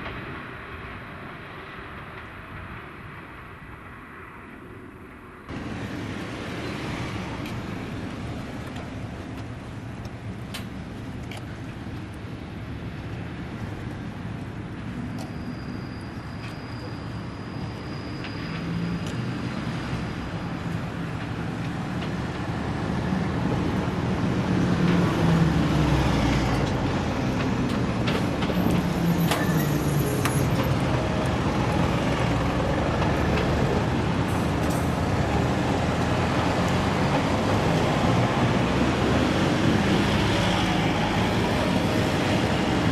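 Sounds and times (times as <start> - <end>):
diesel railcar engine running: 5.5 - 42.9
wheels clicking over rail joints: 7.2 - 15.4, 17.6 - 42.9.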